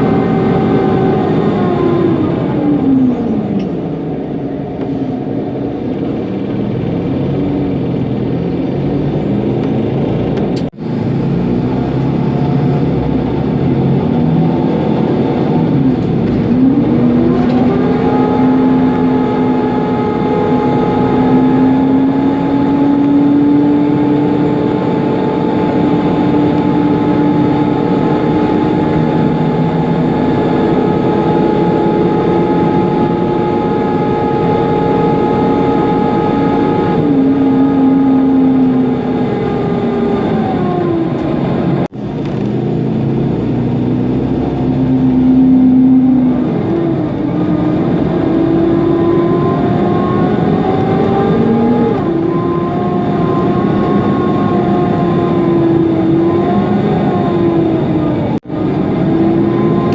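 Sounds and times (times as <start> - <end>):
bus engine running: 0.0 - 59.9
engine cooling fan whine: 0.0 - 59.9
road noise: 0.0 - 59.9.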